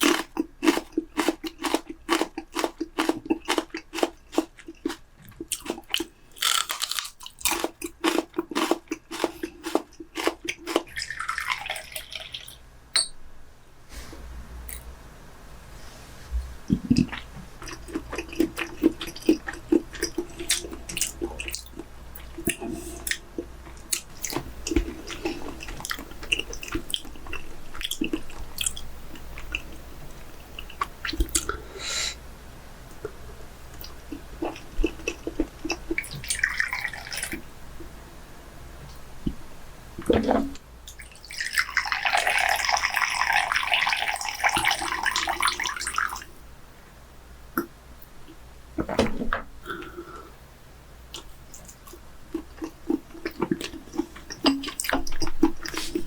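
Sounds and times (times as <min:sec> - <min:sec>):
liquid pouring: 0:36.3 - 0:37.4, 0:41.0 - 0:46.3.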